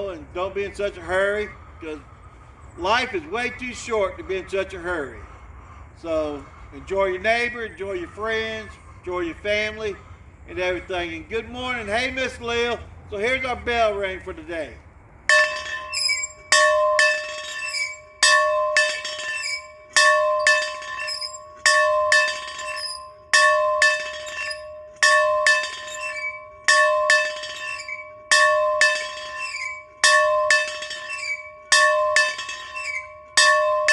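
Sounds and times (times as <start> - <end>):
bell ringing: 15.3 - 33.9.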